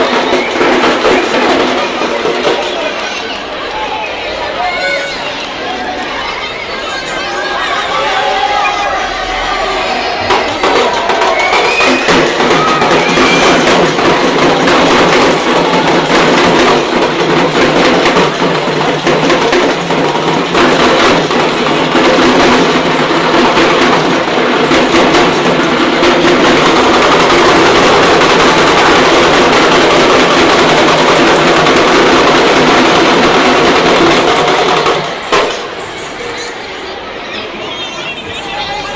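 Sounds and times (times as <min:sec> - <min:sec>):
frame drums beaten rapidly: 0:00.0 - 0:02.7, 0:10.2 - 0:35.6.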